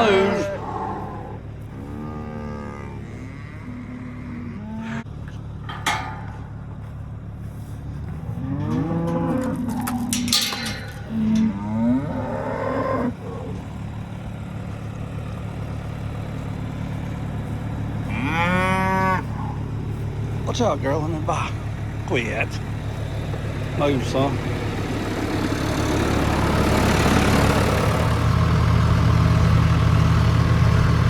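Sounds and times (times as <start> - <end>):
cows mooing: 0.0 - 5.1, 8.0 - 13.8, 18.0 - 20.0
vehicle engine idling hum: 0.0 - 31.0.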